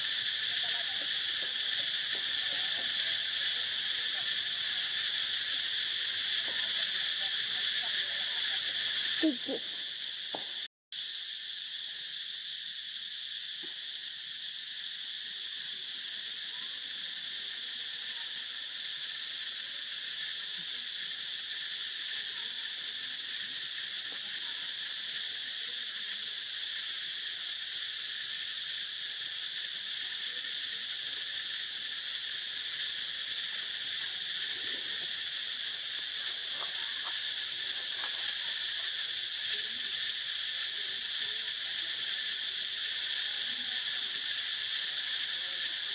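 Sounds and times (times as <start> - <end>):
insect chorus buzzing: 0.0 - 45.9.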